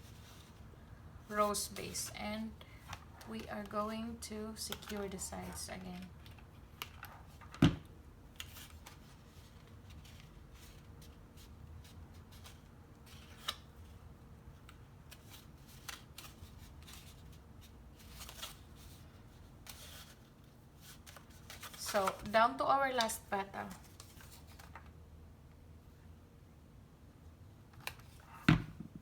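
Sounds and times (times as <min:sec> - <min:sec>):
paper rustling and crinkling: 0:15.1 - 0:24.9.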